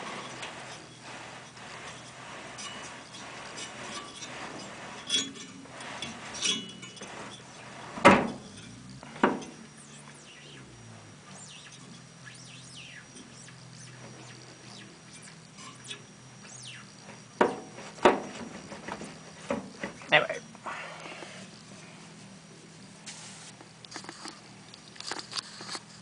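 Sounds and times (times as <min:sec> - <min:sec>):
knocks of handled motor parts: 0:09.1 - 0:09.6
faint bird chirps: 0:09.6 - 0:17.2.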